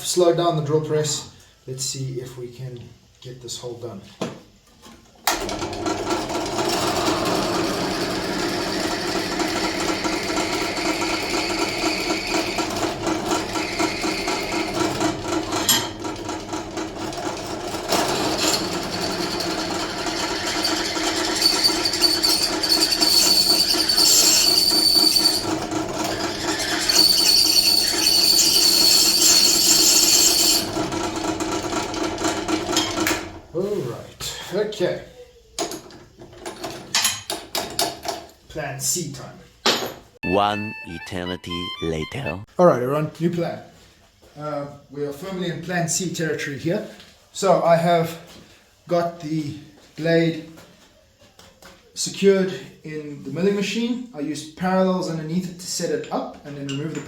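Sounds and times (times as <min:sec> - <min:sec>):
drill bit grinding into steel: 0:20.1 - 0:30.8
high squeal of bit on steel: 0:21.4 - 0:25.4, 0:26.6 - 0:29.7.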